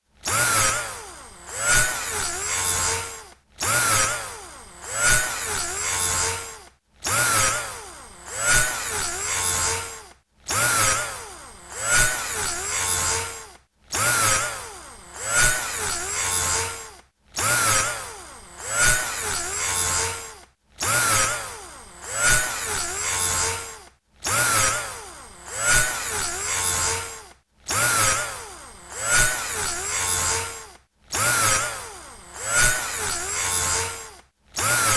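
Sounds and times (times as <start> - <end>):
electric drill motor: 0.2 - 34.9.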